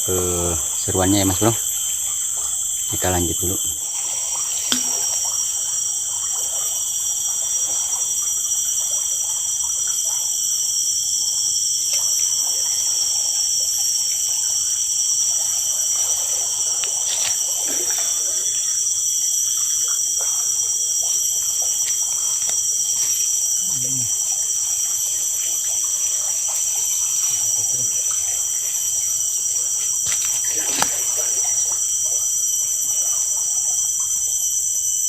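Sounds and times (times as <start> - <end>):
river water flowing: 3.8 - 5.3.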